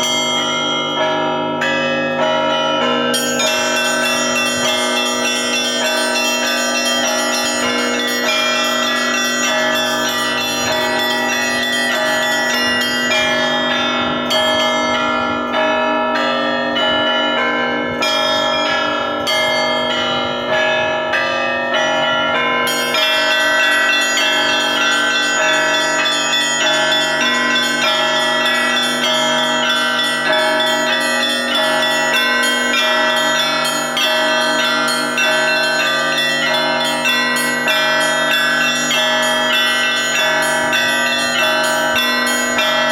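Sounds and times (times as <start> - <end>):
church bells pealing: 0.0 - 42.9
steady deep bell tone: 0.0 - 42.9.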